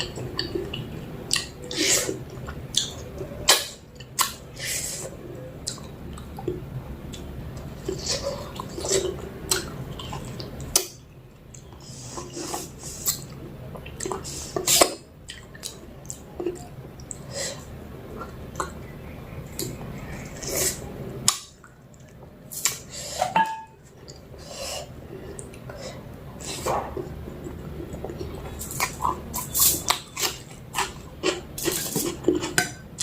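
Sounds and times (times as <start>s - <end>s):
wet chewing and mouth smacking: 0.0s - 4.4s, 13.0s - 17.3s, 26.4s - 33.0s.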